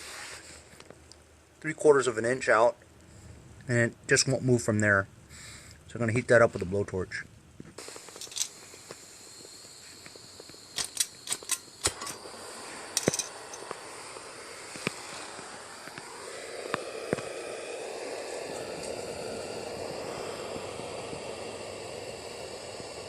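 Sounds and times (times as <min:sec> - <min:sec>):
blowtorch flame hissing: 0:00.0 - 0:00.8, 0:07.8 - 0:23.0
blowtorch clicks and knocks: 0:10.1 - 0:12.3, 0:13.0 - 0:16.1.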